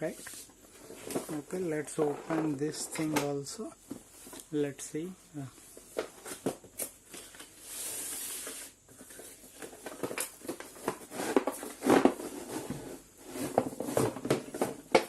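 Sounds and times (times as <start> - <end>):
packaging rustling: 5.7 - 12.4.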